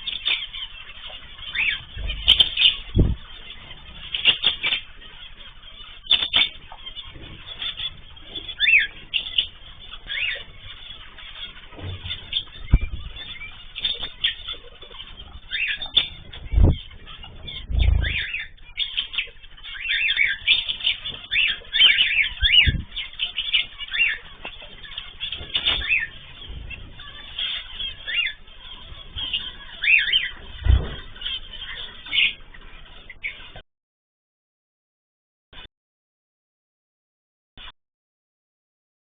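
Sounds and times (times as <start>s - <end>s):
birds chirping: 0.0s - 33.6s
low thumps: 1.8s - 3.4s, 11.8s - 13.5s, 16.0s - 18.7s, 30.5s - 31.2s
wing flutters: 6.1s - 19.2s.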